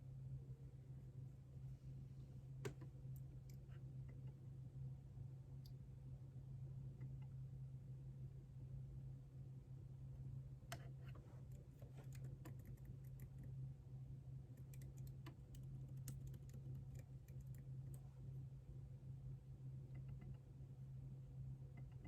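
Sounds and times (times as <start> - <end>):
low steady hum: 0.0 - 22.0
typing on computer keyboard: 14.6 - 18.0.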